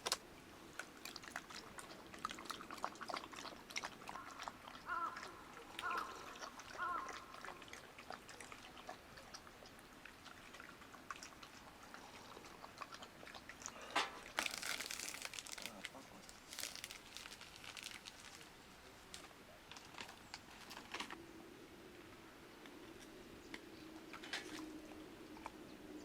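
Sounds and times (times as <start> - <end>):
crunchy chewing: 0.8 - 18.5
rustling: 14.1 - 21.2.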